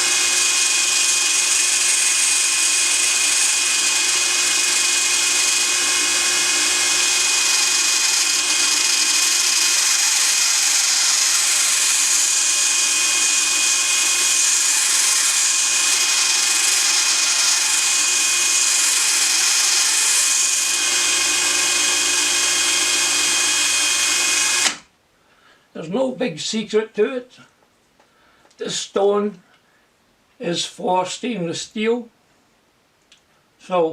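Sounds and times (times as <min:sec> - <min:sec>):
electric drill motor whining: 0:00.0 - 0:24.8
grinding stone on steel: 0:00.0 - 0:24.8.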